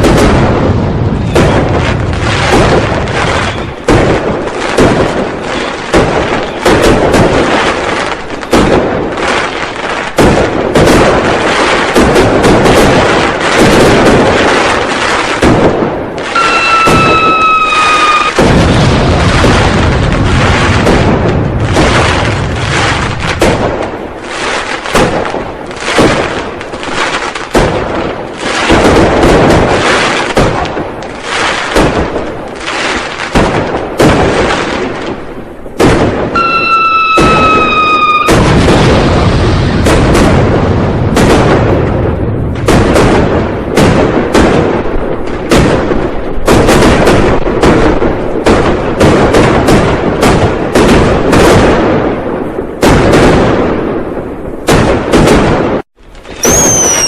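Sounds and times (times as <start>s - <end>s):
firecrackers banging: 0.0s - 57.0s
whistling tone sliding down: 16.4s - 18.4s, 56.4s - 57.0s.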